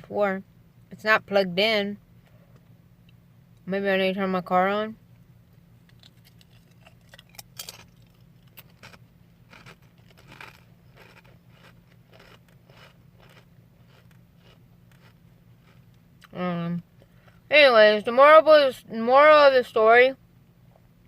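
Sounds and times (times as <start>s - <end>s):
steady low hum: 0.0s - 21.0s
person chewing crisps: 5.8s - 16.4s.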